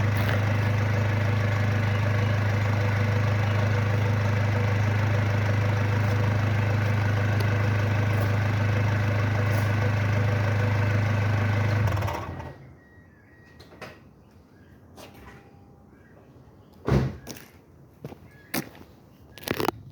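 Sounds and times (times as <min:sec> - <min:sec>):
vehicle engine idling: 0:00.0 - 0:12.8.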